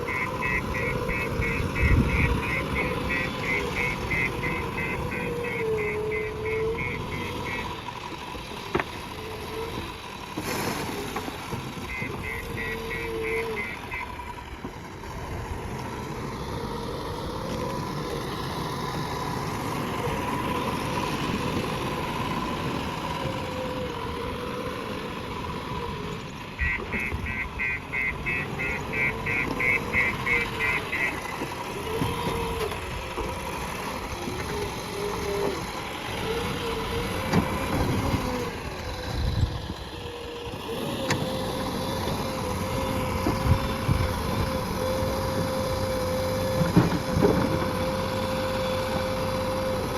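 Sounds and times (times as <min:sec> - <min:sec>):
rapid beeping: 0:00.0 - 0:07.9, 0:11.9 - 0:14.1, 0:26.6 - 0:31.3
diesel engine running: 0:00.0 - 0:49.9.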